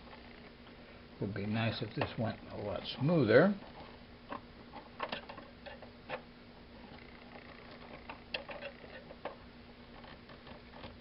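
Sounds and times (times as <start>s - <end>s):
faint steady hum: 0.0s - 11.0s
screwdriver clicking and scraping metal: 7.7s - 9.4s.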